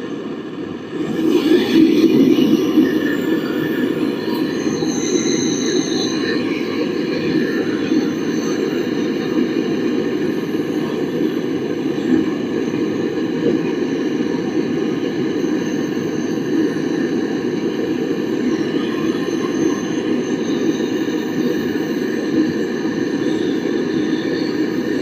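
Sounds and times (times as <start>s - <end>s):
gas torch flame roaring: 0.7s - 5.7s.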